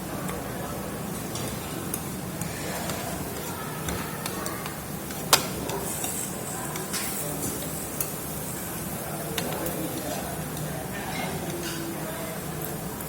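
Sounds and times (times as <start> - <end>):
faint voices: 0.0 - 13.0
steady hum and hiss: 0.0 - 13.0
utensils clicking on tableware: 1.2 - 8.2.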